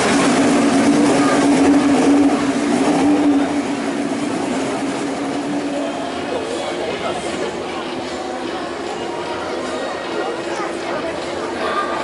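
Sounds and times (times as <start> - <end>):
rotary engine running: 0.0 - 8.2.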